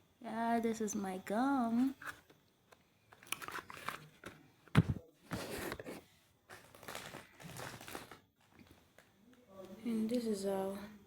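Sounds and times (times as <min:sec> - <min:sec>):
rustling and crinkling objects: 0:03.1 - 0:09.7.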